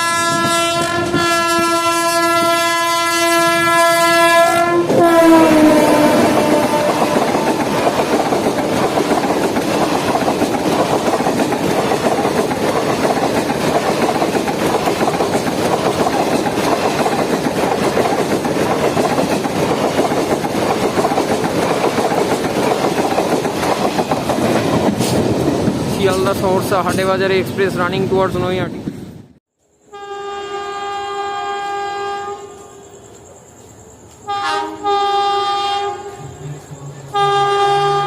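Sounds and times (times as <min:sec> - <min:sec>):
train horn: 0:00.0 - 0:08.7, 0:29.8 - 0:33.0, 0:34.2 - 0:38.0
train wheels clattering on rails: 0:04.9 - 0:27.9.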